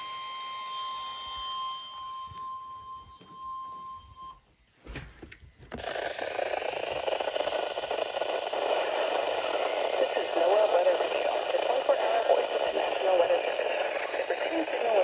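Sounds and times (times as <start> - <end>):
weather radio alarm tone: 0.0 - 4.5, 5.8 - 15.0
radio hiss: 5.7 - 15.0.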